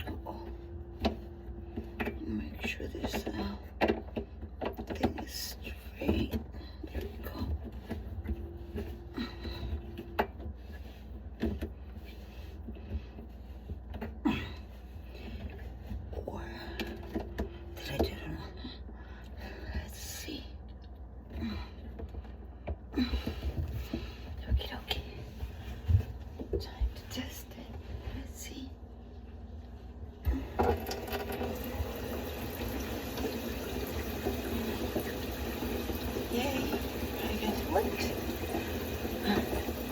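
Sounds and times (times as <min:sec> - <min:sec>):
faint steady hum: 0:00.0 - 0:39.9
water running from tap into sink: 0:30.3 - 0:39.9.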